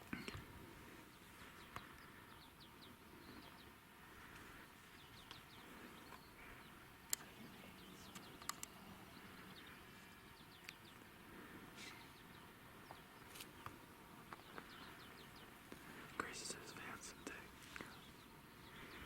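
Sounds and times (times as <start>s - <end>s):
faint bird chirps: 0.1s - 19.0s
sharp clicks: 7.0s - 7.3s, 8.0s - 8.8s.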